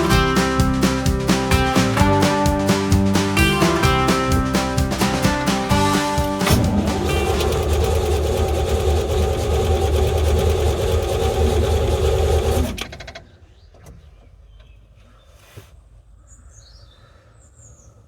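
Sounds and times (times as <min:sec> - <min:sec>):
engine running and winding down: 0:00.0 - 0:12.6.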